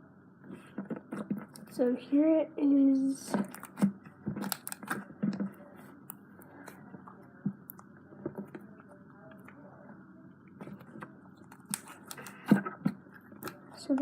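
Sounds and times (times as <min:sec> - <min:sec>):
slime squishing: 0:03.2 - 0:09.6, 0:10.5 - 0:14.0.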